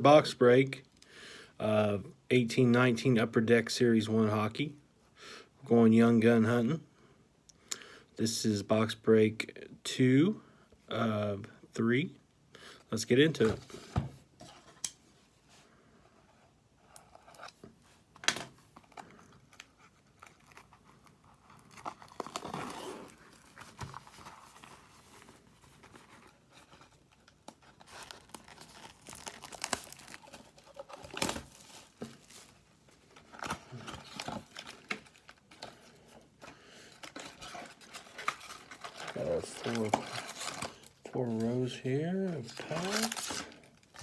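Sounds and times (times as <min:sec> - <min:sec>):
plastic wrap tearing and crinkling: 0:19.0 - 0:36.0, 0:36.9 - 0:41.5, 0:42.4 - 0:44.0.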